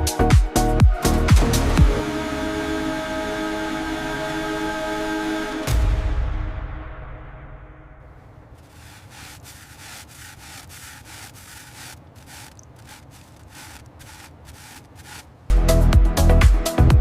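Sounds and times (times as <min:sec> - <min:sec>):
abrasive rubbing strokes: 0:08.2 - 0:15.5.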